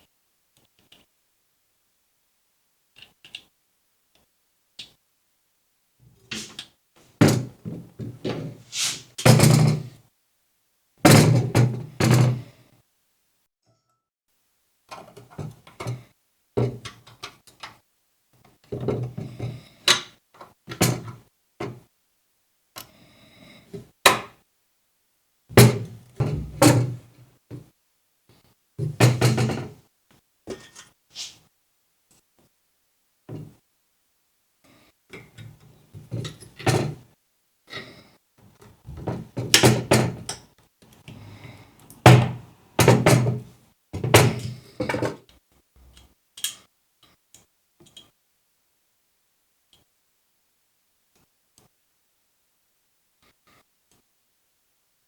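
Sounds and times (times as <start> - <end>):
short hiss: 6.3 - 6.6, 8.7 - 9.2, 31.1 - 31.5
knocks and thuds: 38.8 - 40.2.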